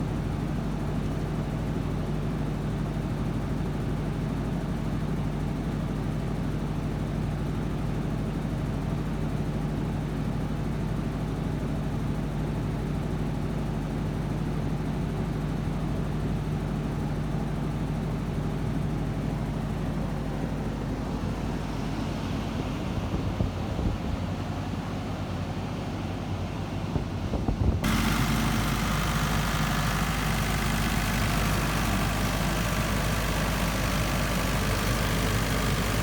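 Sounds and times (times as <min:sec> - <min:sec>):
diesel generator running: 0:27.8 - 0:36.0.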